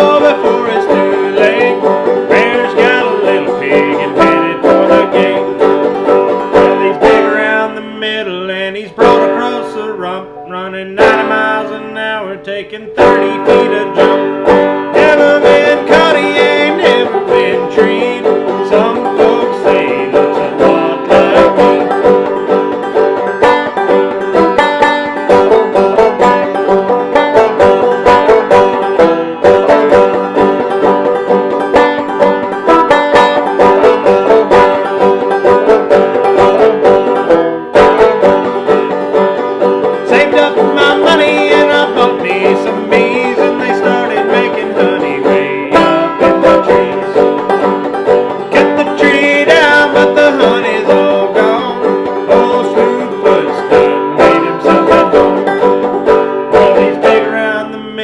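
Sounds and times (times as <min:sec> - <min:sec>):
banjo played clawhammer style: 0:00.0 - 0:58.0.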